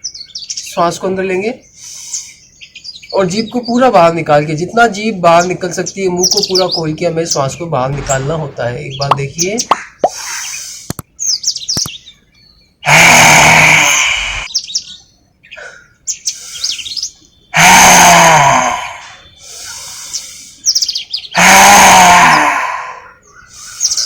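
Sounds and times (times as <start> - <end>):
birds chirping: 0.0 - 24.0
man roaring breathily: 12.9 - 14.5, 17.6 - 19.2, 21.4 - 23.2.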